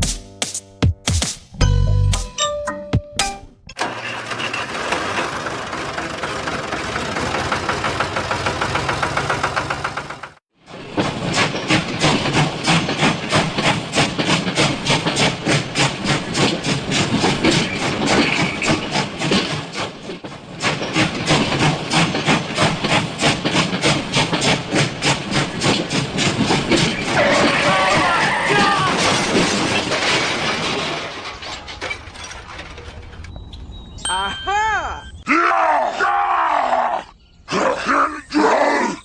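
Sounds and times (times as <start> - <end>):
steam locomotive chuffing: 3.8 - 10.4, 11.2 - 27.3.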